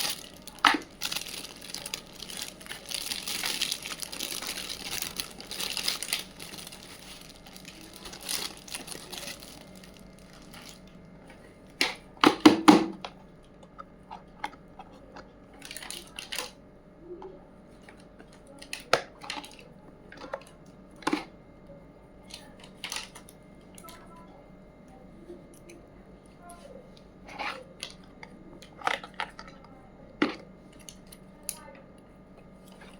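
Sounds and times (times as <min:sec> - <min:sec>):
packaging crinkling: 0:00.0 - 0:11.0, 0:15.6 - 0:16.5.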